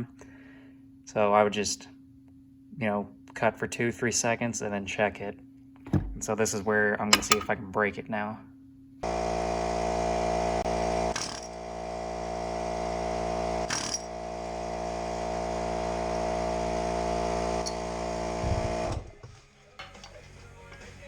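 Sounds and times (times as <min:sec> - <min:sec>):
short knocks: 0:05.9 - 0:06.3
power tool running: 0:09.0 - 0:20.1.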